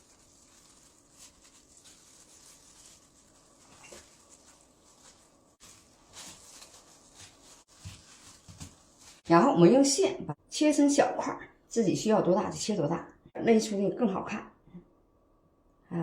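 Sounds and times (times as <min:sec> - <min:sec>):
dough being rolled by hand: 0:00.0 - 0:09.4
soft rubs and taps: 0:03.6 - 0:09.2.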